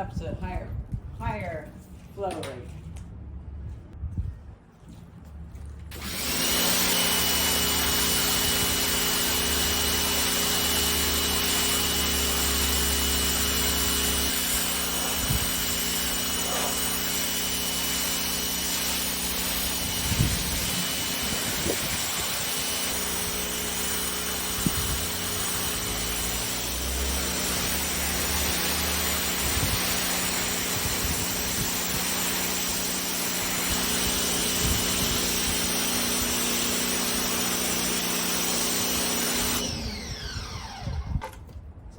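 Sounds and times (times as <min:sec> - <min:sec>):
pump hum: 0:05.9 - 0:41.0
pressure washer water spray hiss: 0:14.4 - 0:17.3, 0:18.8 - 0:23.5, 0:26.8 - 0:32.8.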